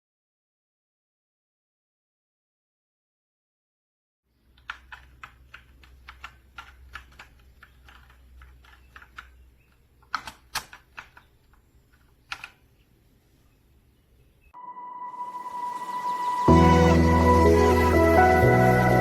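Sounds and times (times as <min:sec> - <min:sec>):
mechanical keyboard typing: 0:04.6 - 0:09.4, 0:10.0 - 0:12.6.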